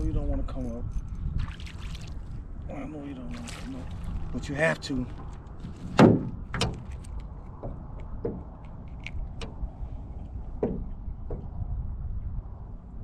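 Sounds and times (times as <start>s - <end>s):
wind buffeting microphone: 0.0s - 13.0s
soft knocks: 7.6s - 8.5s, 10.6s - 11.6s.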